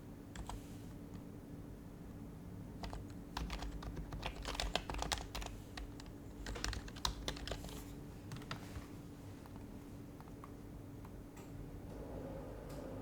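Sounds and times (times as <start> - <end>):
faint hum: 0.0 - 13.0
quiet keyboard typing: 0.3 - 1.2, 2.7 - 10.6.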